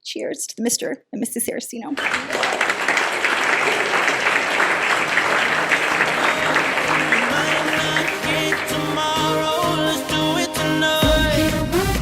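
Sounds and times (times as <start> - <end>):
crowd applauding: 2.0 - 10.4.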